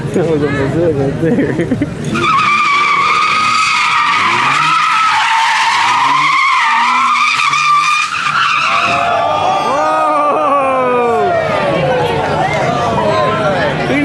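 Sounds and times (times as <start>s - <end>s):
tyres squealing: 2.0s - 9.2s.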